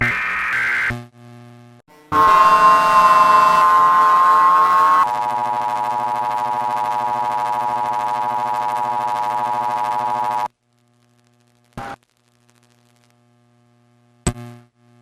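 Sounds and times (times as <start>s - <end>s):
electronic alert buzz: 1.9s - 10.5s
faint electrical hum: 5.4s - 15.0s.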